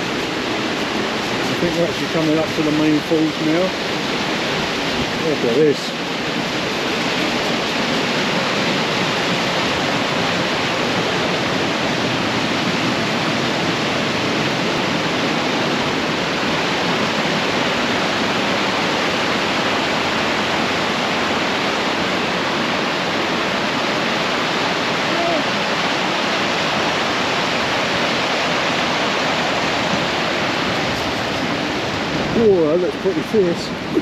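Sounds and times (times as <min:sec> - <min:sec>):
waterfall crashing: 0:00.0 - 0:34.0.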